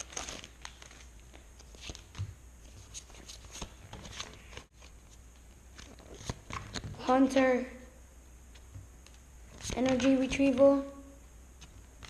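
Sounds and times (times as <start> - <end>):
wrapper rustling: 0.0 - 2.1.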